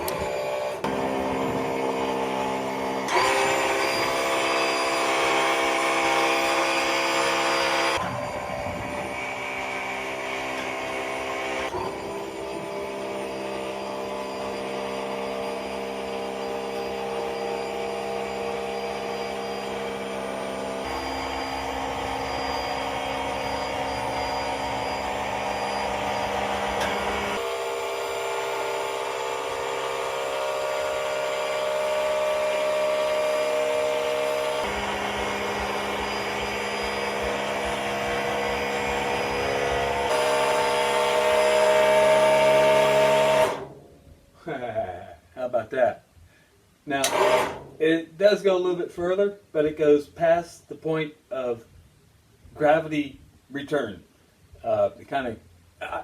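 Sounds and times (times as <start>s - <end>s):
small motor whining: 0.0s - 43.8s, 47.0s - 47.8s.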